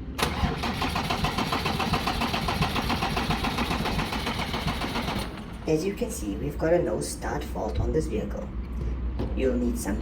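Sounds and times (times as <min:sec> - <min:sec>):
diesel engine cranking: 0:00.0 - 0:06.9.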